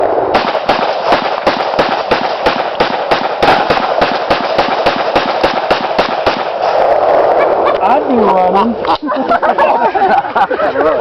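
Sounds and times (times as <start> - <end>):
rapid gunfire: 0.3 - 6.7
steady background din: 0.3 - 10.3.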